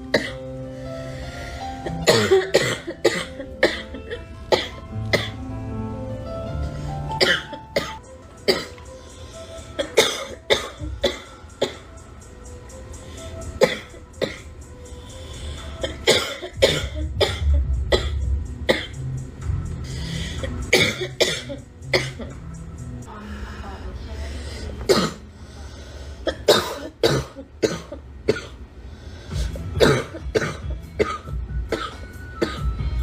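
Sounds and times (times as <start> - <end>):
music with low bass: 0.0 - 23.1, 29.3 - 33.0
girl coughing: 0.1 - 0.4, 1.8 - 5.4, 7.2 - 8.8, 9.8 - 11.9, 13.6 - 14.5, 15.8 - 19.0, 20.4 - 22.4, 24.9 - 25.2, 26.2 - 28.6, 29.8 - 32.7.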